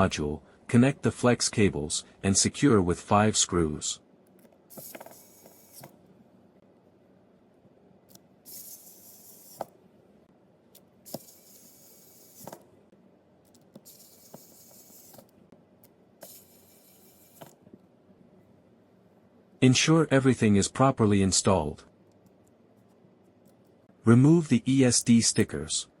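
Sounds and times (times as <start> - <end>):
short hissy bursts: 4.7 - 5.9, 8.5 - 9.7, 11.1 - 12.6, 13.8 - 15.3, 16.2 - 17.5.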